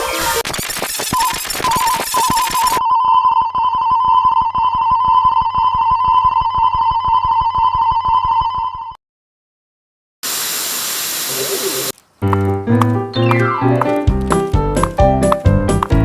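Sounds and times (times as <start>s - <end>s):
loud hiss: 10.2s - 11.9s.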